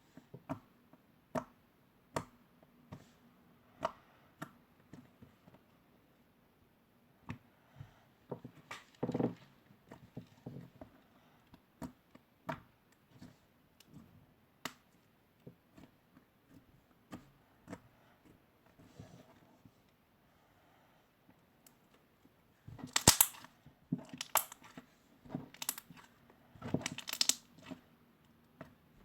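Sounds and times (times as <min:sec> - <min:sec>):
slime squelching and popping: 0:22.7 - 0:27.8.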